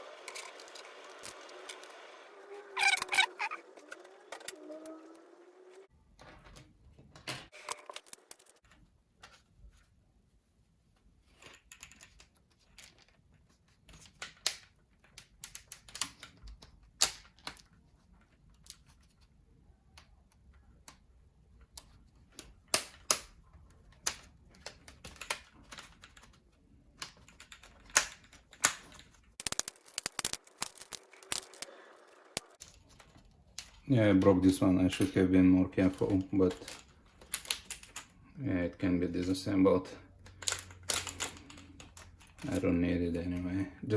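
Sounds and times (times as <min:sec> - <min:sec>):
plastic laptop parts clicking: 0:11.5 - 0:31.7, 0:35.8 - 0:38.2, 0:40.2 - 0:42.6.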